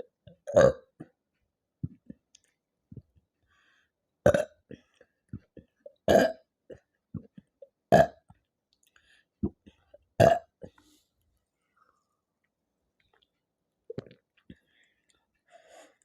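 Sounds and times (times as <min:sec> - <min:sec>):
woman burping: 0:06.1 - 0:06.5.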